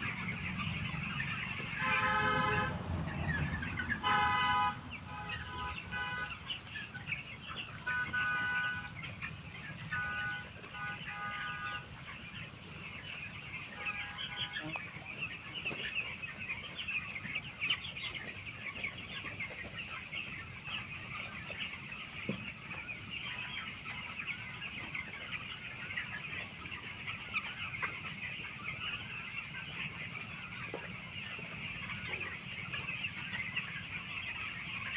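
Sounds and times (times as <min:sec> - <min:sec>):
chicks peeping: 0:00.0 - 0:34.9
horn toots: 0:01.8 - 0:02.9, 0:04.0 - 0:06.5, 0:07.8 - 0:09.0.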